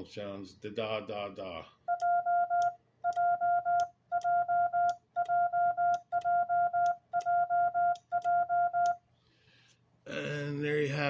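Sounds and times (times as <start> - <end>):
morse code beep: 1.9 - 9.0.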